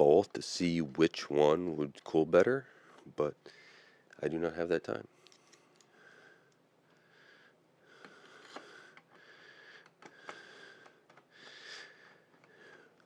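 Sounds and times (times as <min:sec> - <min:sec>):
breathing through the nose: 0:02.7 - 0:04.0, 0:05.2 - 0:13.0.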